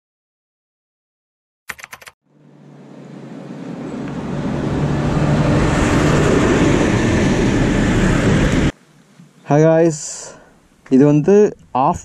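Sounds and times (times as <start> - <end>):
road noise: 2.2 - 11.7
wind noise: 4.9 - 8.7.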